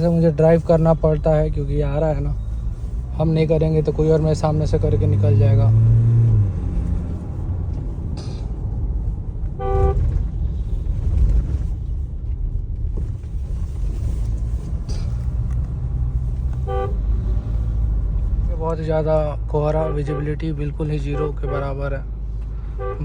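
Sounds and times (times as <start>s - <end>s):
vehicle cabin driving rumble: 0.0s - 23.0s
vehicle horn toots: 9.6s - 10.2s, 16.6s - 17.1s, 19.8s - 20.4s, 21.1s - 21.8s, 22.8s - 23.0s.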